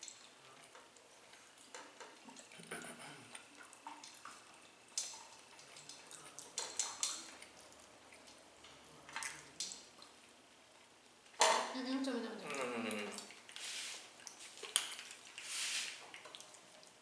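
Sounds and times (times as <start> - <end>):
chewing with wet mouth clicks: 14.2 - 15.4.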